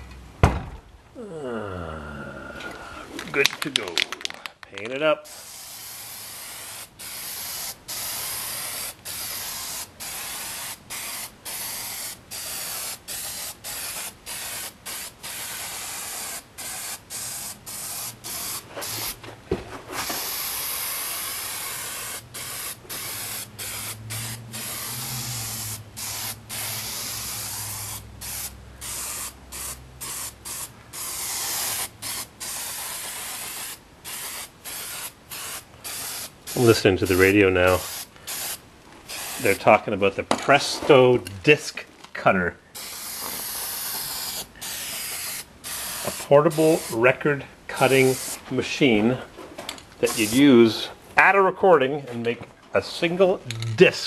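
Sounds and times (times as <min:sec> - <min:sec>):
spray paint can hissing: 0:05.2 - 0:19.2, 0:20.0 - 0:39.6, 0:42.8 - 0:47.0, 0:47.9 - 0:48.4, 0:50.1 - 0:50.4.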